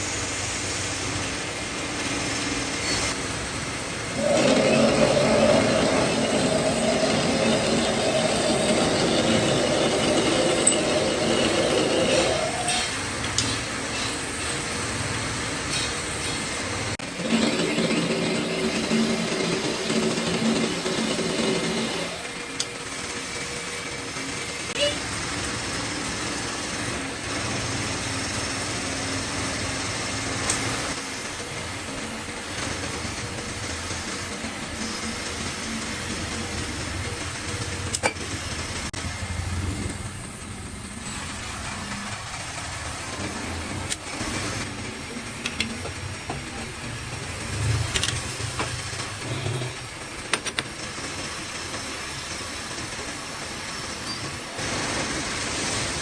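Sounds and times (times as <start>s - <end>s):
metal lathe humming: 3.1s - 13.1s, 16.6s - 24.7s.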